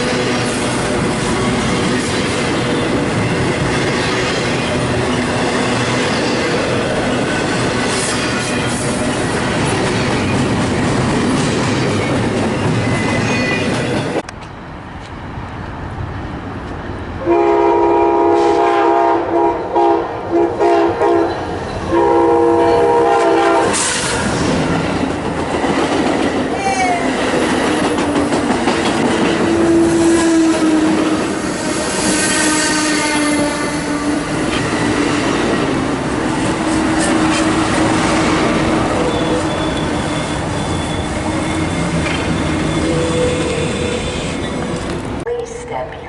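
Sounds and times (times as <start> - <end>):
train wheels clattering on rails: 0.0 - 15.2, 22.8 - 32.4, 33.4 - 45.2
locomotive chime horn: 17.2 - 23.8.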